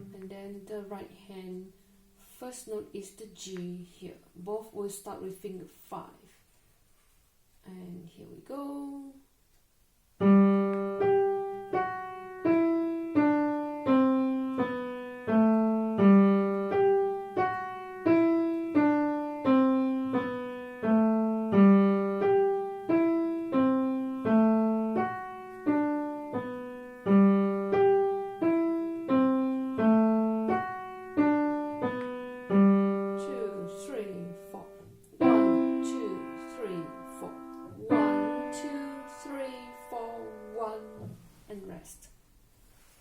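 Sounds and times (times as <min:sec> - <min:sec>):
slow piano melody: 0:10.2 - 0:41.5.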